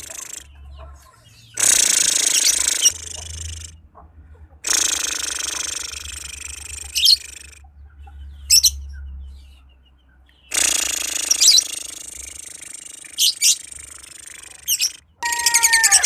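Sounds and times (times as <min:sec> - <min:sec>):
lovebird chattering trills: 0:00.0 - 0:00.8, 0:01.4 - 0:03.8, 0:04.6 - 0:07.7, 0:10.4 - 0:16.0
sharp high bird squeaks: 0:10.4 - 0:12.0, 0:12.7 - 0:16.0.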